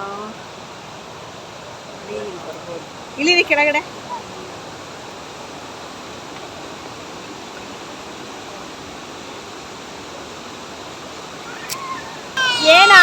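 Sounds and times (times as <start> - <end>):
waterfall rushing: 10.9 - 13.0.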